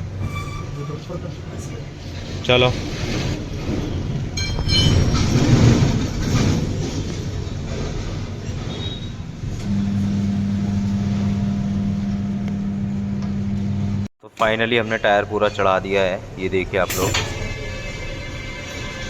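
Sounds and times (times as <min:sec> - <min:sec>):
machine rumbling and clanking: 0:00.0 - 0:14.0, 0:16.9 - 0:18.0
motor humming: 0:09.5 - 0:14.1.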